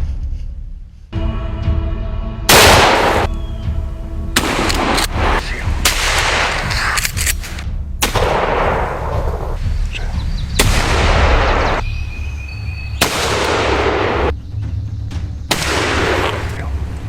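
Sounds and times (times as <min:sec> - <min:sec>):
music: 0:00.0 - 0:17.0
gunshots: 0:02.5 - 0:03.3, 0:04.4 - 0:09.6, 0:10.6 - 0:11.8, 0:13.0 - 0:14.3, 0:15.5 - 0:16.7.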